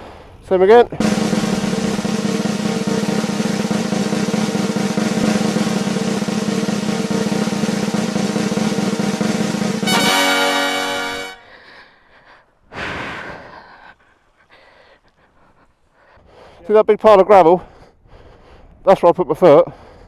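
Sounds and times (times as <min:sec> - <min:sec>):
snare drum roll: 0:01.0 - 0:11.4
held horn-like chord: 0:01.0 - 0:11.6.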